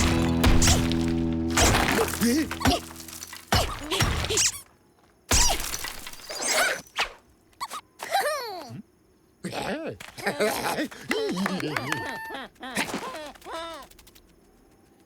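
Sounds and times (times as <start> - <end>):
cartoon music: 0.0 - 3.5
crashes and shattering impacts: 0.0 - 4.4.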